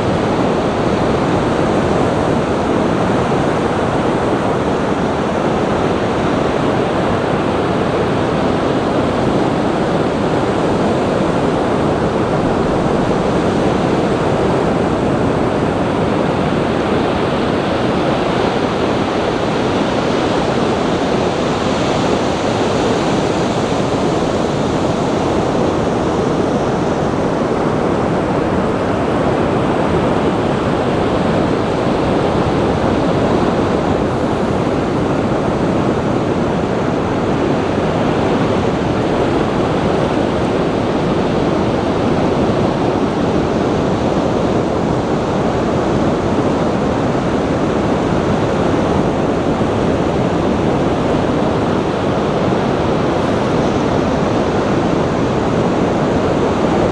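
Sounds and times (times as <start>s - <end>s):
rushing water: 0.0s - 56.9s.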